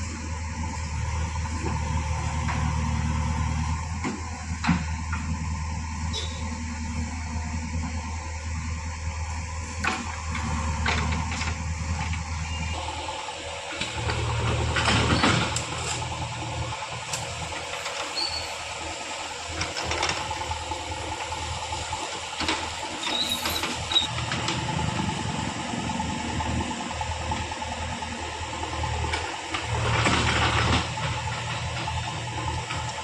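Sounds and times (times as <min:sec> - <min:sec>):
diesel engine under load: 0:00.0 - 0:33.0.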